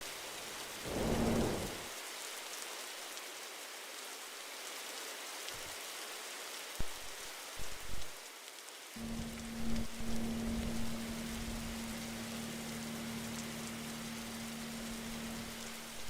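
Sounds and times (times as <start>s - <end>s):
low rumble and hum: 0.9s - 1.9s, 9.0s - 16.0s
air conditioner hissing: 9.0s - 16.0s.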